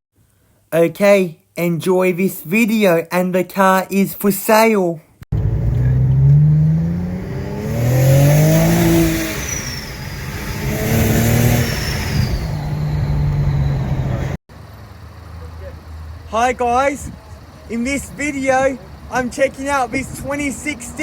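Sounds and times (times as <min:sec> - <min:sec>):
car engine revving: 0:05.3 - 0:21.0.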